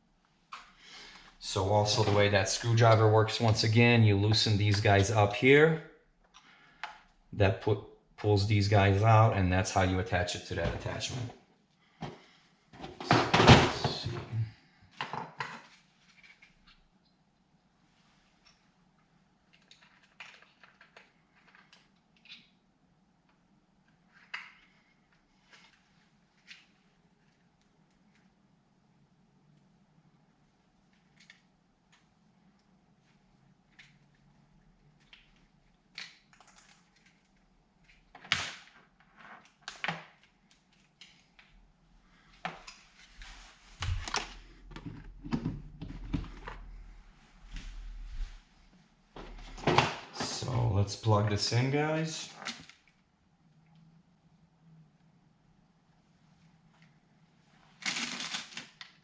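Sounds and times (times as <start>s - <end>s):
low steady hum: 40.2s - 57.6s.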